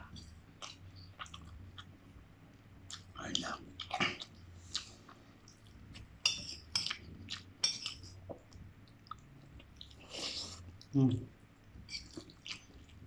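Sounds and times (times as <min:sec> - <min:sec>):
cutlery clinking against bowl: 0:06.2 - 0:07.0, 0:07.6 - 0:08.1.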